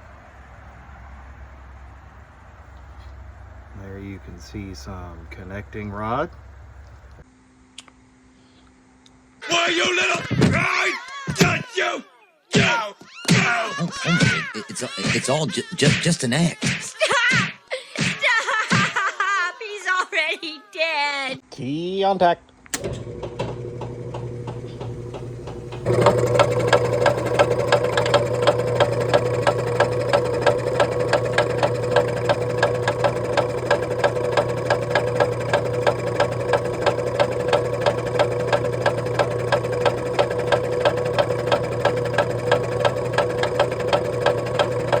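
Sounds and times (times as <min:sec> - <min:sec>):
compressor hum: 0:03.7 - 0:07.2, 0:22.7 - 0:45.0
pump knocking: 0:22.8 - 0:45.0.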